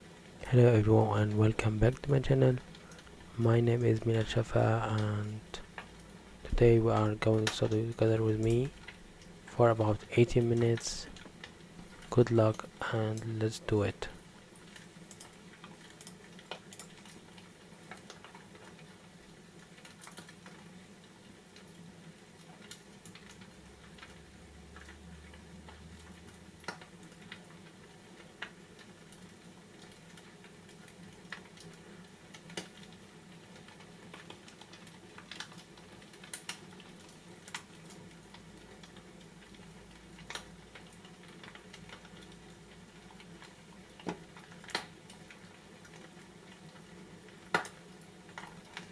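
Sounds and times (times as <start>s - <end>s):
steady low hum: 0.4s - 14.4s
fireplace pops and crackles: 14.2s - 24.2s, 24.8s - 48.9s.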